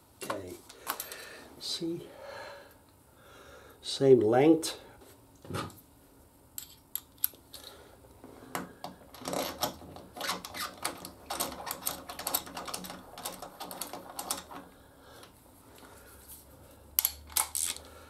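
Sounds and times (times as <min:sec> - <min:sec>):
metallic clicks and taps of tools: 0:17.0 - 0:17.8.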